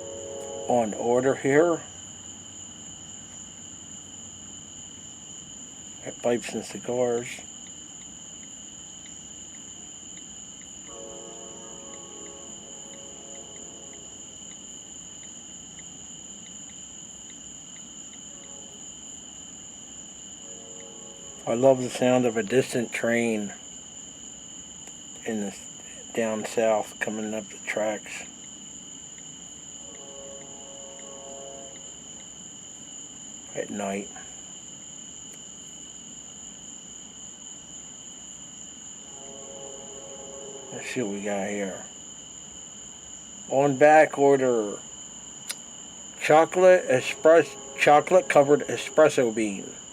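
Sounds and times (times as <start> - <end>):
distant freight train rumble: 0.0 - 2.7, 10.8 - 15.2, 18.2 - 23.7, 29.8 - 32.1, 39.0 - 42.2, 45.8 - 49.9
crickets trilling: 0.0 - 49.9
insects chirring: 0.0 - 49.9.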